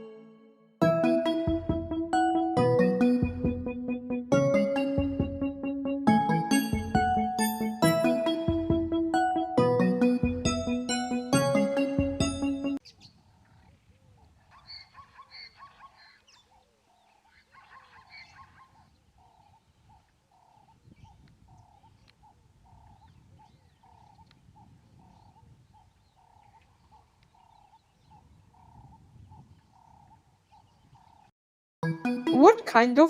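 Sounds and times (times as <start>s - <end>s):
faint animal calls: 13.0s - 31.3s.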